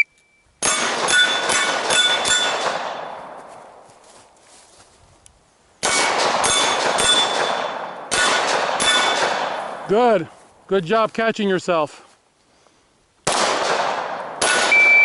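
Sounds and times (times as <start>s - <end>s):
steel plate ringing: 0.6s - 2.6s
pistol shots: 0.6s - 3.4s, 5.8s - 9.8s, 13.2s - 15.0s.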